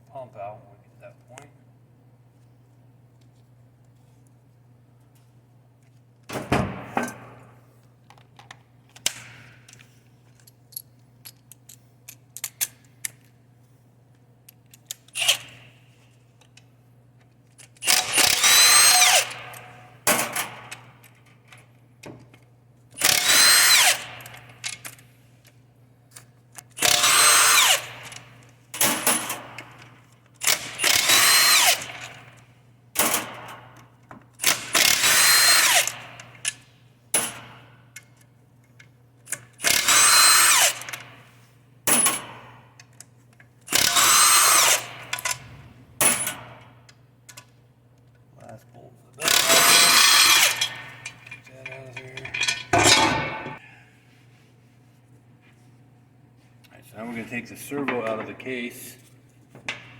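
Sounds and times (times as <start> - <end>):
power drill whining: 17.8 - 19.4, 23.0 - 24.1, 26.8 - 27.9, 30.4 - 31.9, 34.8 - 36.0, 39.6 - 40.9, 43.7 - 45.0, 49.2 - 50.7.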